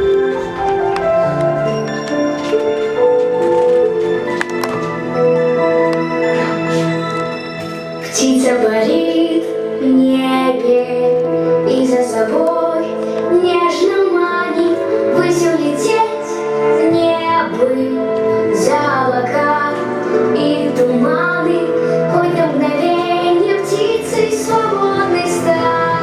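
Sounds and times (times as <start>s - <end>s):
instrumental accompaniment: 0.0s - 26.0s
woman singing: 8.0s - 26.0s.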